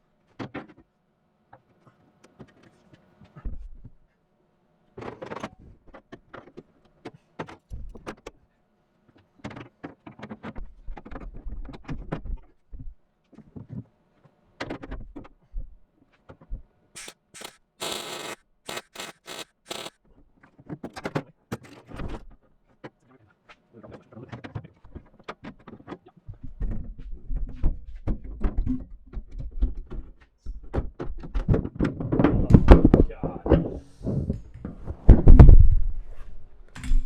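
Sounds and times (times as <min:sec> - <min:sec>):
welding crackling hiss bursts: 0:17.0 - 0:19.9.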